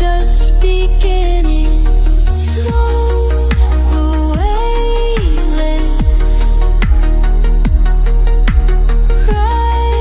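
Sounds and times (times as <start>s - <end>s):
heavy sustained bass: 0.0s - 10.0s
kick drums: 2.7s - 2.9s, 3.5s - 3.8s, 4.4s - 4.6s, 5.2s - 5.4s, 6.0s - 9.6s.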